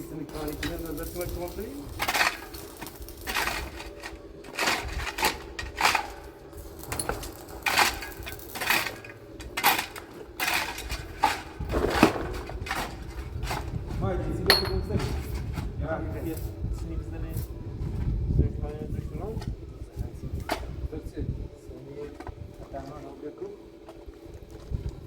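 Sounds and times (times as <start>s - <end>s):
metallic clinks and clanks: 6.8s - 11.4s, 14.5s - 15.2s.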